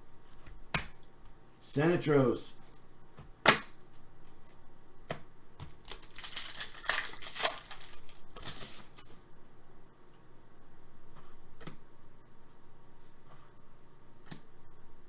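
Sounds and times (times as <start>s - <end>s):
wrapper crinkling and tearing: 5.6s - 9.2s.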